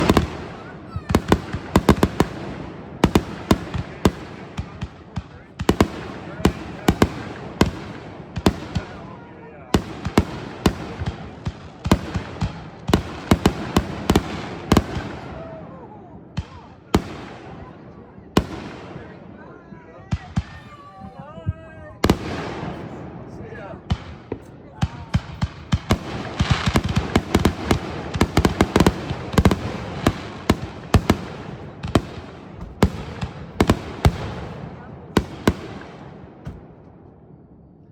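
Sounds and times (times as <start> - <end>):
fireworks crackling: 0.0 - 9.0, 9.7 - 15.6, 21.8 - 36.9
fireworks banging: 0.0 - 15.5, 16.1 - 19.4, 20.1 - 37.5.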